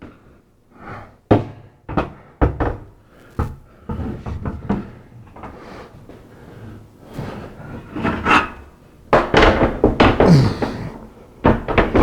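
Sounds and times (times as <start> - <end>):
scaffold parts knocking: 9.2 - 12.0.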